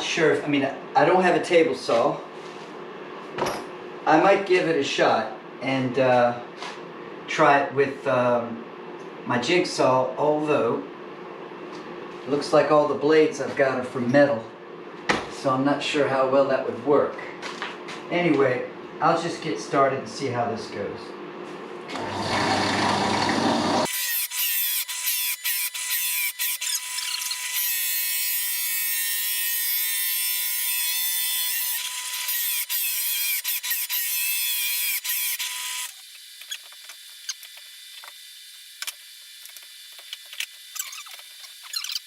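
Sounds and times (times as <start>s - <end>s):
drill cutting wood: 21.9s - 42.0s.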